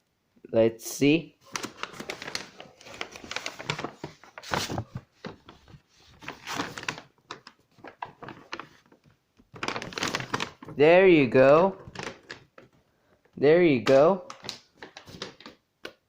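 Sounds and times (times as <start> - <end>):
packaging rustling: 1.4 - 10.8, 11.4 - 13.3, 14.2 - 15.6.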